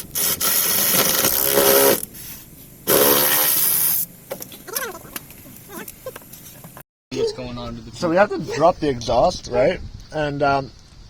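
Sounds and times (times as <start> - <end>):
power tool bursts: 0.0 - 2.2, 2.9 - 4.1.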